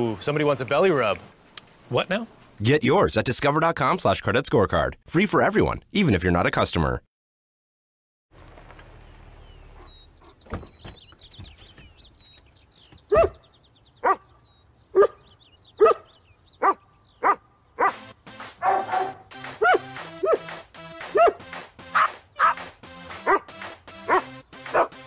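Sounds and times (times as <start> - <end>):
faint high-pitched chirping: 9.4 - 17.4
dog barking: 13.1 - 14.2, 15.0 - 15.2, 15.8 - 18.0, 18.6 - 20.4, 21.1 - 21.4, 22.0 - 22.6, 23.2 - 23.5, 24.1 - 25.0.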